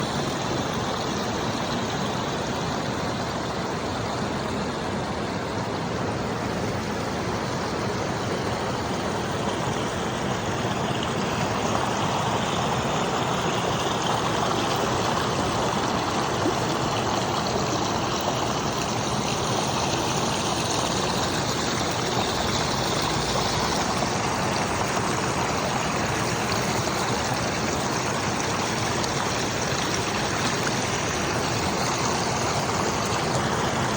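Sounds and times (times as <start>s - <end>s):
river rushing and babbling: 0.0s - 33.9s.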